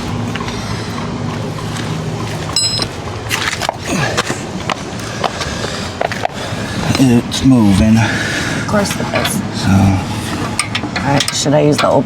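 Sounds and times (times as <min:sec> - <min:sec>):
steady low hum: 0:00.0 - 0:12.0
short metallic ring: 0:02.6 - 0:02.9.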